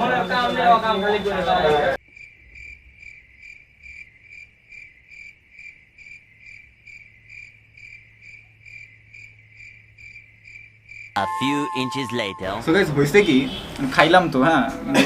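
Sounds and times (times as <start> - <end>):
cricket chirping: 2.0 - 11.2.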